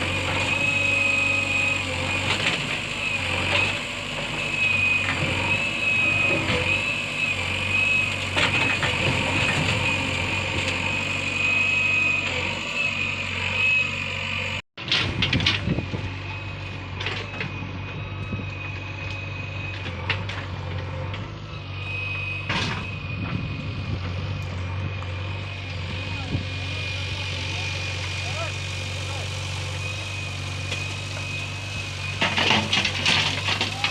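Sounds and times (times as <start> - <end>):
heavy vehicle engine running: 0.0 - 33.9
high whine: 15.6 - 33.9.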